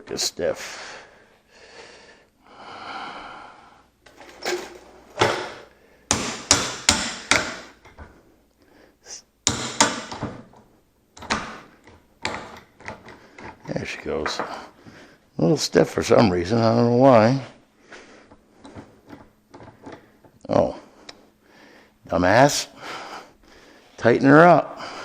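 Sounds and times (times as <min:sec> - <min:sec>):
metallic clunks and knocks of valve: 0:04.1 - 0:08.2, 0:09.4 - 0:13.6.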